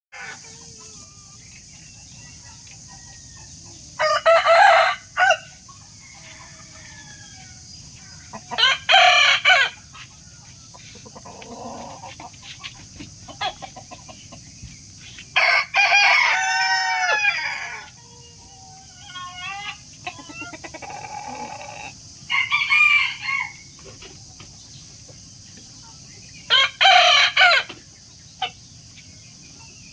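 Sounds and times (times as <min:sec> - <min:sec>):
rooster crowing: 0:03.0 - 0:07.7, 0:15.4 - 0:17.9, 0:22.3 - 0:23.6, 0:26.5 - 0:27.7.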